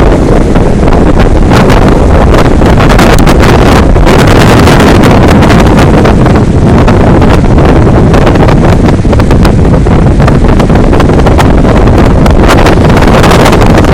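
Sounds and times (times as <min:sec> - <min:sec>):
wind buffeting microphone: 0:00.0 - 0:13.9.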